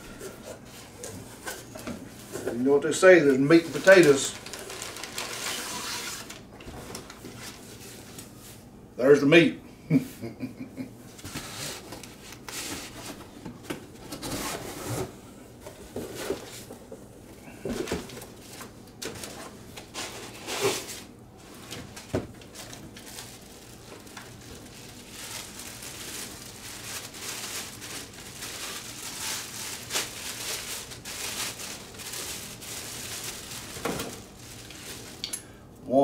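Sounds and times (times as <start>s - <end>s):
packaging crinkling and rustling: 3.2s - 8.4s, 17.6s - 35.3s.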